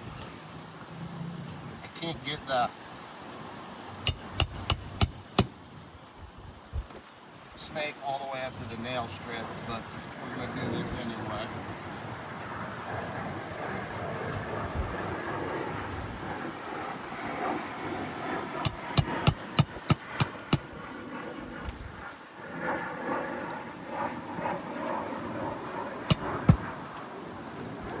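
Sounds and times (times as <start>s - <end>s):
hammer striking roof shingles: 4.0s - 5.6s, 18.6s - 20.7s, 26.1s - 26.9s.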